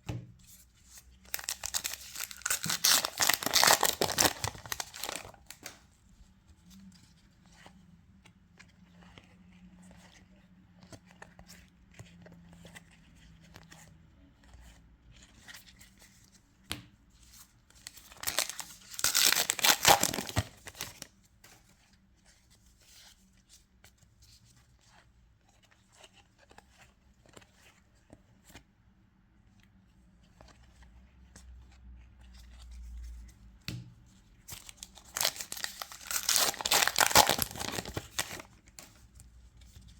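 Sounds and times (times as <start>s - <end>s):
foil wrapper tearing: 1.3s - 5.4s, 18.2s - 20.8s, 34.6s - 38.4s
wrapper rustling: 1.3s - 5.6s, 17.8s - 21.1s, 34.5s - 38.6s.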